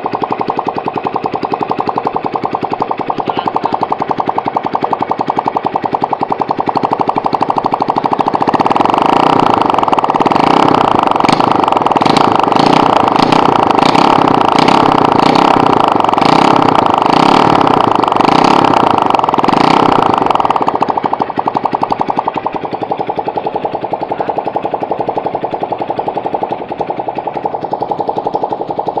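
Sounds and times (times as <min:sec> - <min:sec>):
motorcycle engine revving and idling: 0:00.0 - 0:29.0.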